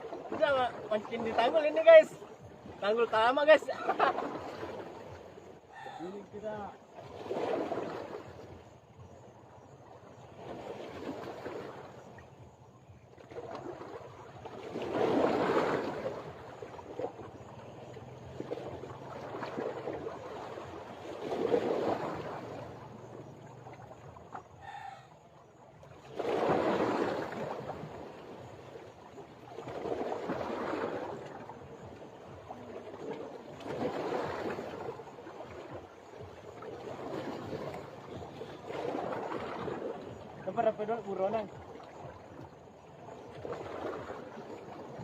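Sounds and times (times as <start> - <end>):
waves washing against seawall: 0.0 - 4.9, 5.8 - 8.4.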